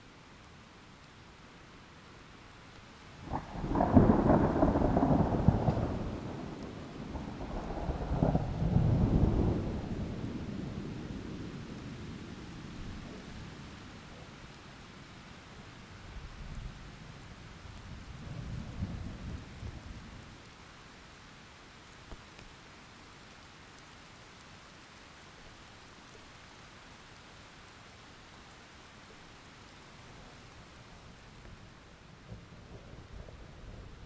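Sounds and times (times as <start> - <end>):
steady rain falling: 0.0 - 34.0
thunder rumbling: 3.3 - 12.0.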